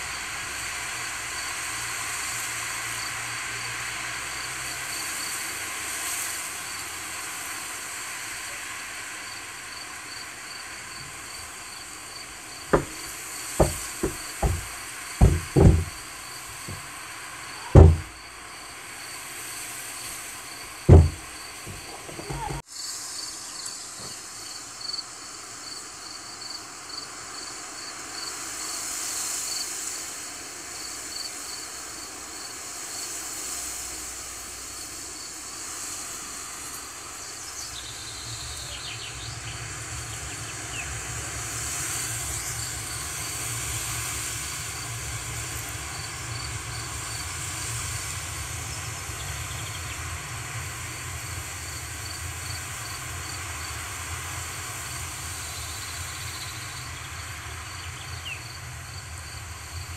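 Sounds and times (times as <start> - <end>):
insect chirping: 9.3 - 16.9
wind rustling through grass: 10.6 - 16.9.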